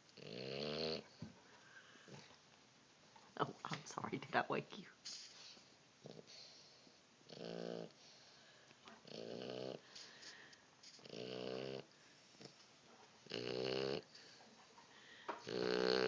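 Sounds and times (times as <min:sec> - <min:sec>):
pitched snores: 0:00.2 - 0:01.1, 0:07.2 - 0:08.1, 0:09.0 - 0:10.1, 0:11.0 - 0:12.5, 0:13.3 - 0:14.1, 0:15.4 - 0:16.0.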